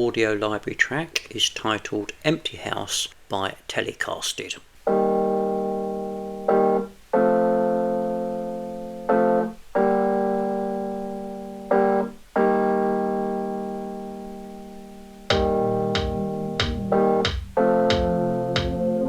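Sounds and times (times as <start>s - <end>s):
piano-like keyboard chords: 4.9s - 19.0s.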